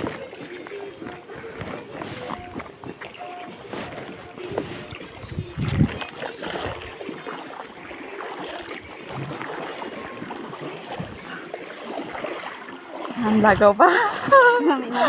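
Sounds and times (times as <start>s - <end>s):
footsteps splashing through water: 0.0s - 15.0s
running water: 0.0s - 15.0s
wind buffeting microphone: 3.9s - 8.0s.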